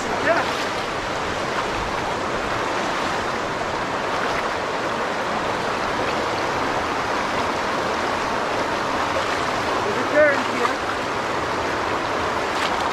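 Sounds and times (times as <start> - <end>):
river water rushing over rocks: 0.0 - 12.9.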